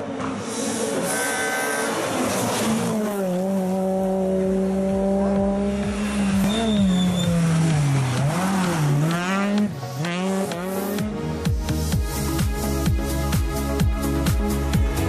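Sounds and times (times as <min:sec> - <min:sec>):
rally car engine revving: 0:00.1 - 0:11.3.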